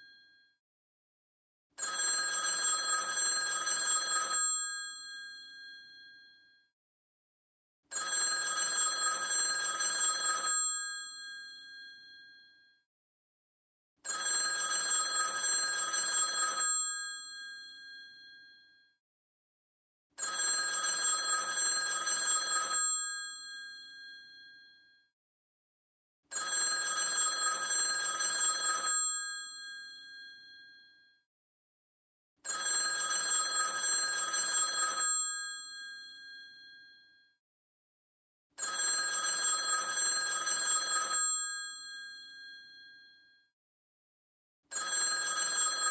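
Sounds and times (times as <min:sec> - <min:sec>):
telephone bell ringing: 0:01.8 - 0:06.5, 0:07.9 - 0:12.6, 0:14.0 - 0:18.8, 0:20.2 - 0:24.9, 0:26.3 - 0:31.0, 0:32.4 - 0:37.2, 0:38.6 - 0:43.2, 0:44.7 - 0:45.9.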